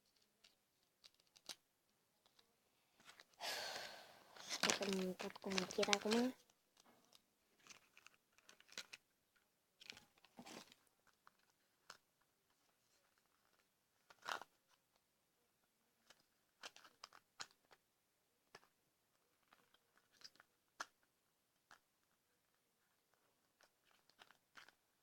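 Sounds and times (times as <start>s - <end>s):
plastic packaging crinkling: 4.4s - 6.4s, 7.1s - 9.0s, 9.8s - 12.0s.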